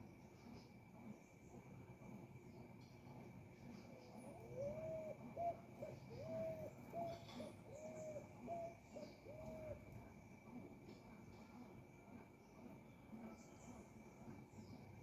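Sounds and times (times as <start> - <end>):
bird calling: 3.9 - 10.0.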